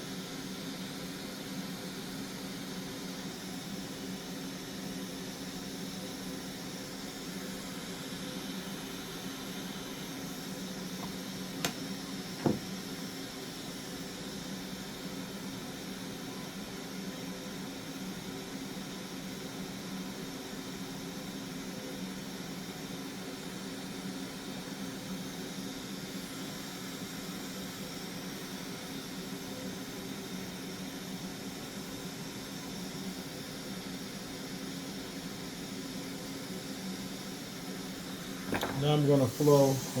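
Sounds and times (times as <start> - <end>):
hot air tool hissing and humming: 0.0 - 40.0.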